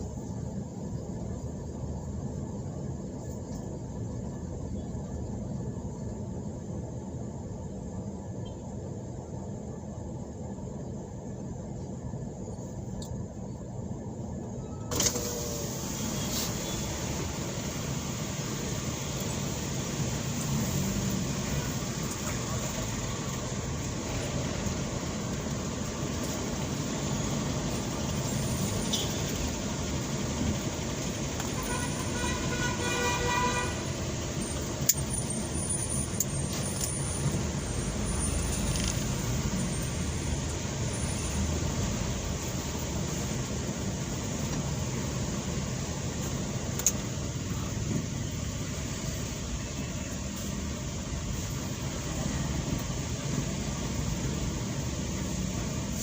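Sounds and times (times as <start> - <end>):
road traffic engines rumbling: 0.0 - 56.0
vehicle horn: 31.4 - 34.0.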